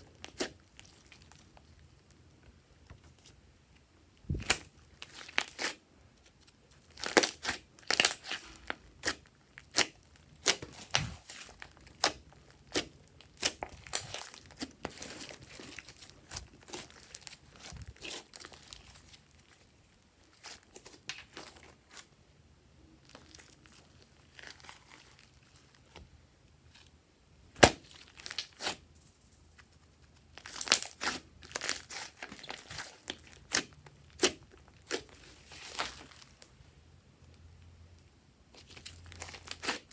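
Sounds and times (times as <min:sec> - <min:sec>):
slime squished by hand: 0:04.3 - 0:05.8, 0:06.8 - 0:19.6, 0:30.4 - 0:36.4, 0:38.6 - 0:39.9.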